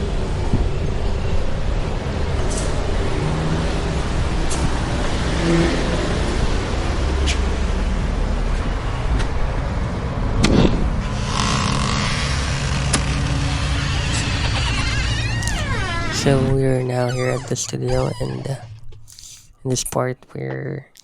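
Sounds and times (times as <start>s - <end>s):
car road and engine noise: 0.0s - 14.9s.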